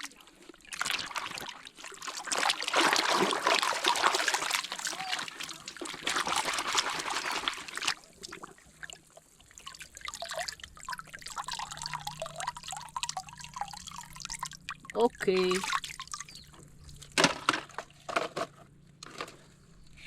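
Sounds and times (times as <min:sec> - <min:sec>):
water splashing over plastic toys: 0:00.0 - 0:18.3
water trickling and dripping: 0:03.6 - 0:17.2.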